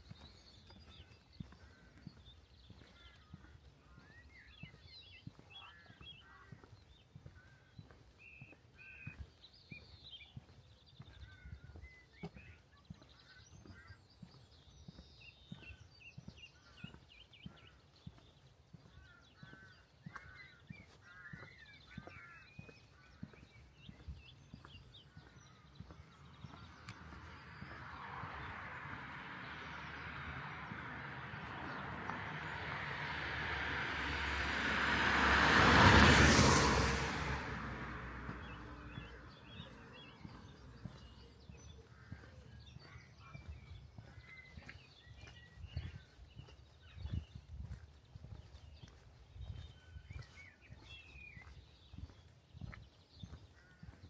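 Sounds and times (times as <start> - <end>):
faint footsteps: 0.0 - 34.2, 37.6 - 54.0
small birds chirping: 0.0 - 34.8, 35.5 - 54.0
vehicle passing by: 24.6 - 42.2.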